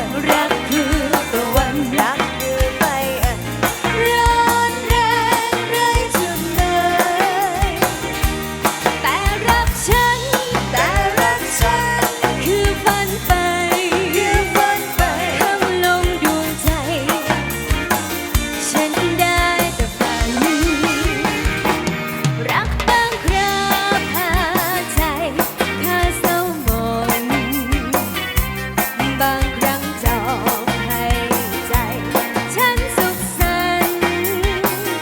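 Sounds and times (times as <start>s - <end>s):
drum kit beat: 0.0s - 35.0s
live band music: 0.0s - 35.0s.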